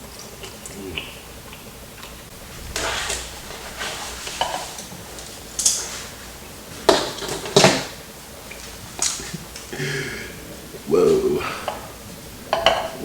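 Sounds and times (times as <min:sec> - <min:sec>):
utensil scraping rice: 0:02.4 - 0:06.3
utensil clinking against dish: 0:12.5 - 0:13.0.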